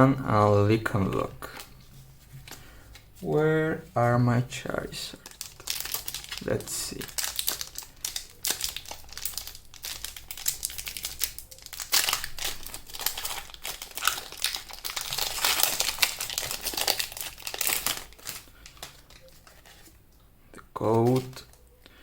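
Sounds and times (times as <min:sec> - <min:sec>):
foil wrapper crinkling: 0:05.0 - 0:20.0, 0:20.8 - 0:21.6.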